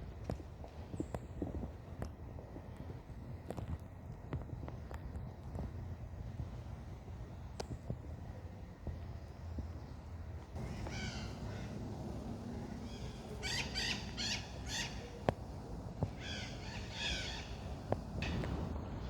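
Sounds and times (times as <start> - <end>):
birds giving harsh calls: 10.6 - 18.6.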